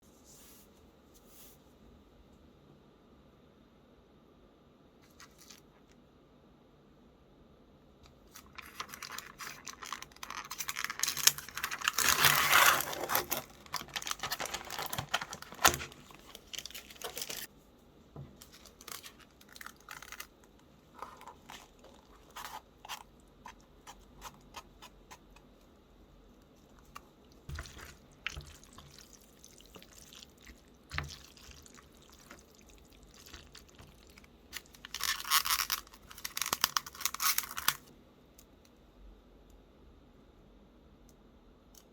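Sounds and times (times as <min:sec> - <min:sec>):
packaging crinkling and rustling: 0:08.2 - 0:17.5, 0:18.4 - 0:23.6, 0:26.8 - 0:37.9.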